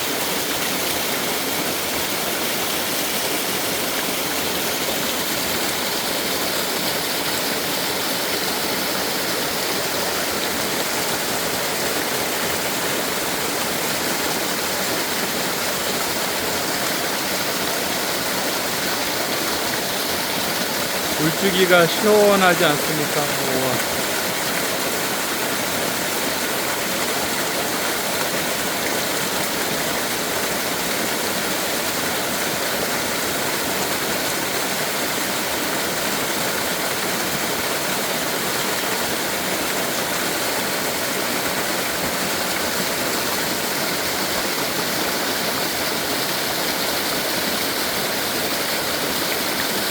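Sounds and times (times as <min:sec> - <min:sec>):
waterfall rushing: 0:00.1 - 0:38.2.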